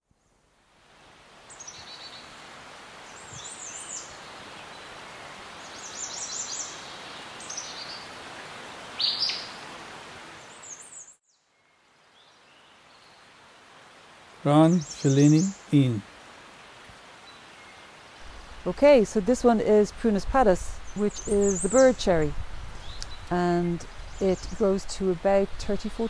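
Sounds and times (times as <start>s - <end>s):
outdoor background hiss: 0.0s - 26.0s
small birds chirping: 14.5s - 16.0s, 17.2s - 26.0s.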